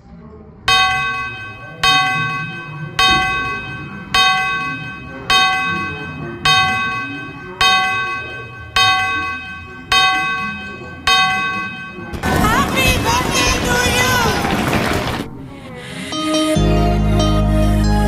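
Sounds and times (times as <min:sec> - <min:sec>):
bell ringing: 0:00.7 - 0:12.1.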